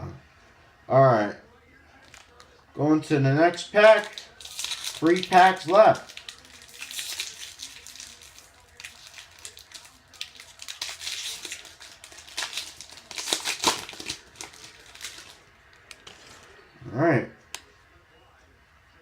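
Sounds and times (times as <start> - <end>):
foil wrapper tearing and crinkling: 2.0 - 2.5, 3.5 - 16.5.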